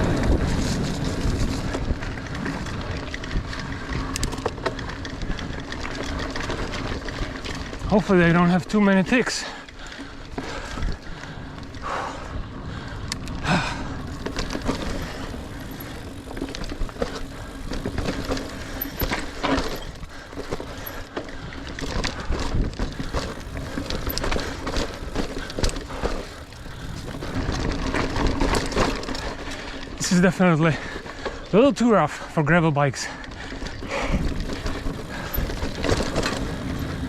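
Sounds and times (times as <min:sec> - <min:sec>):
bike and chain rattling: 0:00.0 - 0:37.0
bike tyres rumbling over dirt: 0:00.0 - 0:37.0.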